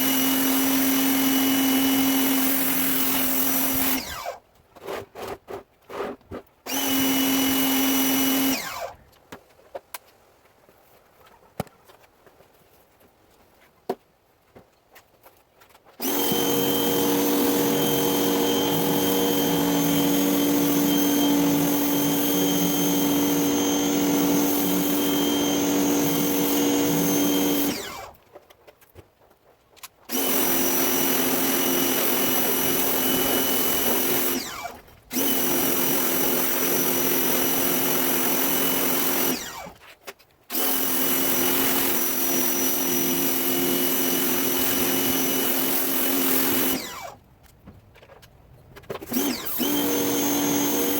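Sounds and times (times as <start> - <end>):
pressure washer motor hum: 0.0 - 4.4, 6.7 - 8.9, 16.0 - 28.2, 30.1 - 39.8, 40.5 - 47.2, 49.1 - 50.9.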